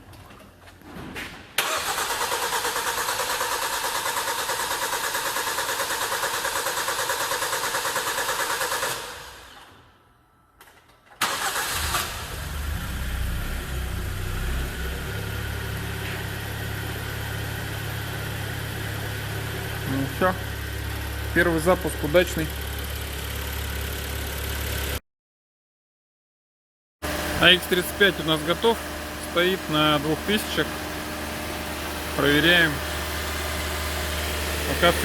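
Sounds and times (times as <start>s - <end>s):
starter motor cranking: 1.6s - 9.2s, 27.0s - 35.0s
car engine idling: 11.6s - 25.0s, 27.0s - 35.0s.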